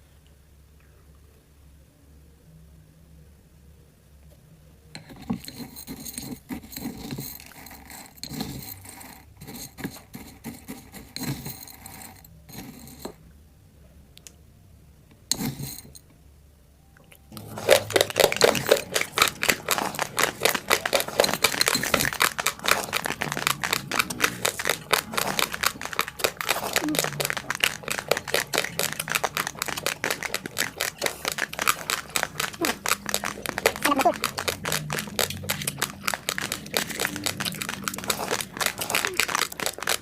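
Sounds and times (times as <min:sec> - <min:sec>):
loud crunching of chewing: 0:17.3 - 0:40.0.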